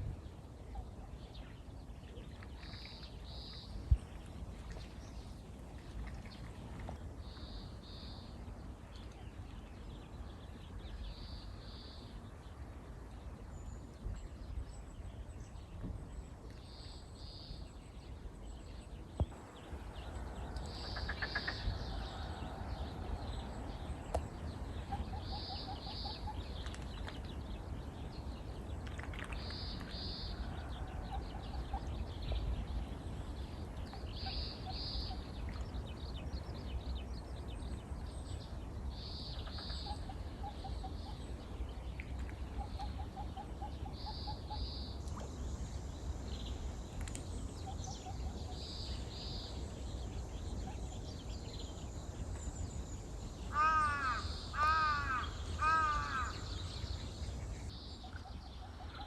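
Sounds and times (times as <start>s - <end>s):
steady low rumble: 0.0s - 44.1s
crow cawing: 53.5s - 56.5s.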